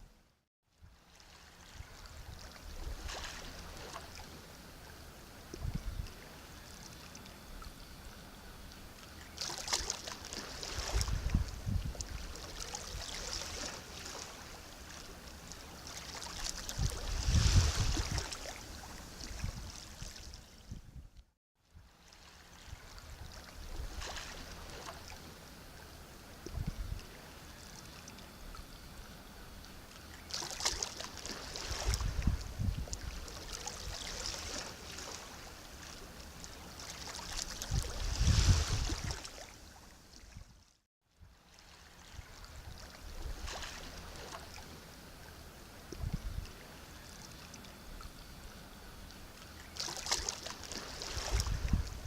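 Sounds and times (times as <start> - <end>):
sea waves washing in: 9.4 - 20.4, 30.1 - 39.9.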